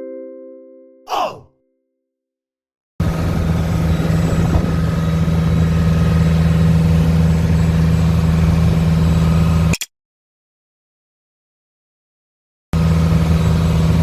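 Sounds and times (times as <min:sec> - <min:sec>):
boat engine humming: 0:03.0 - 0:09.7, 0:12.8 - 0:14.0.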